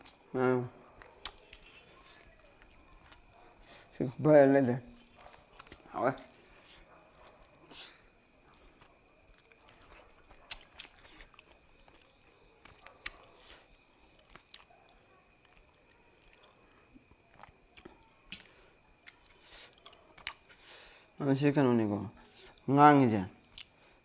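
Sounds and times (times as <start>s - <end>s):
person chewing: 1.0s - 3.8s, 4.9s - 20.7s, 23.4s - 23.7s.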